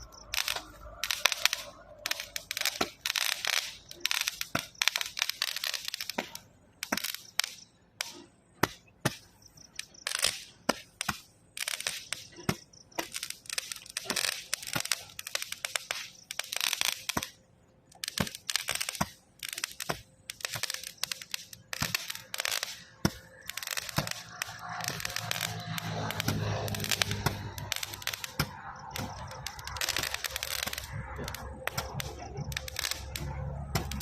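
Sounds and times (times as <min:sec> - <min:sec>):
fireworks cracking and crackling: 0:00.0 - 0:34.0.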